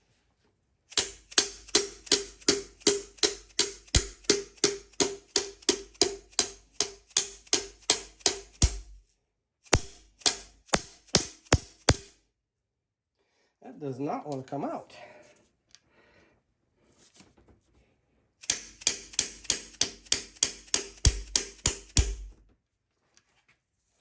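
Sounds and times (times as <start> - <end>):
hammer knocking on metal: 1.0 - 9.0, 9.8 - 12.1, 18.5 - 22.4.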